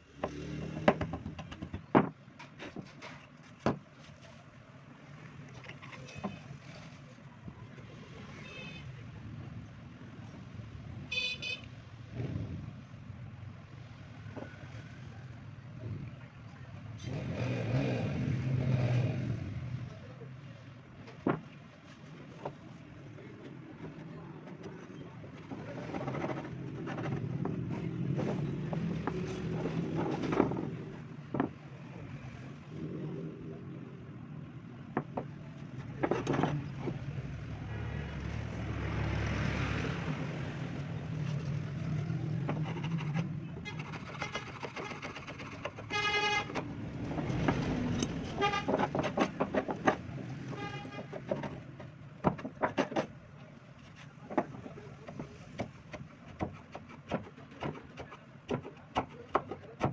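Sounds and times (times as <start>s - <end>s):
road traffic humming: 0.0s - 2.4s, 4.6s - 58.5s
vehicle horn: 11.1s - 11.7s, 45.9s - 46.6s, 48.3s - 48.9s, 50.4s - 51.2s
scattered knocks and clicks: 42.4s - 45.9s, 46.5s - 50.1s.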